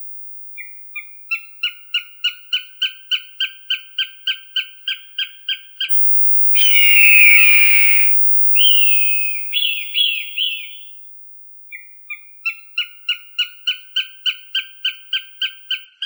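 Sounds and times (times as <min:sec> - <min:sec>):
hawk calling: 0:05.9 - 0:10.8.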